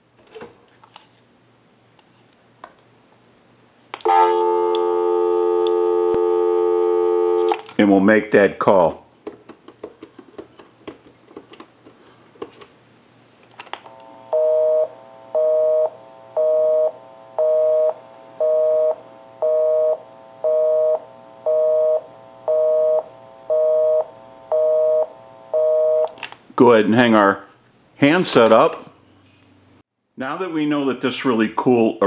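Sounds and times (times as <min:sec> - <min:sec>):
telephone busy signal: 0:04.1 - 0:07.6, 0:14.3 - 0:26.1.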